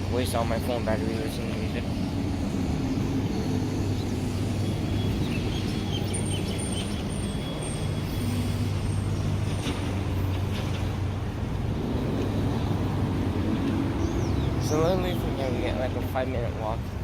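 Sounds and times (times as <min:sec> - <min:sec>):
traffic engine rumble: 0:00.0 - 0:17.0.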